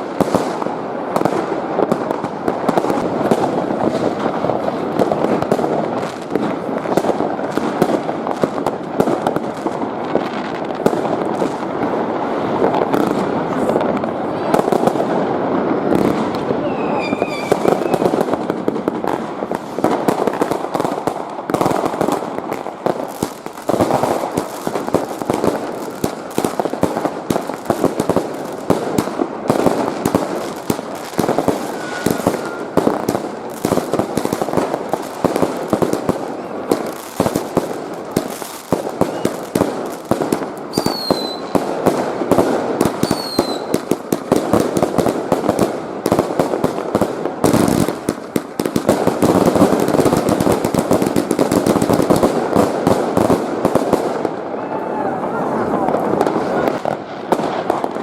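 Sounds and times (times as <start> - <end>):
fireworks bangs and crackle: 0.0 - 58.0
falling firework whistles: 16.6 - 18.2, 31.2 - 33.1, 38.9 - 39.6, 40.7 - 41.6, 43.0 - 43.8.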